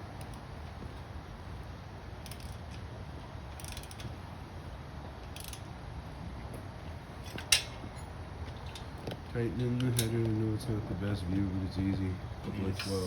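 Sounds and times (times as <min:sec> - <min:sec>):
ratchet wrench clicking: 0:02.2 - 0:02.6, 0:03.5 - 0:04.1, 0:05.4 - 0:05.6.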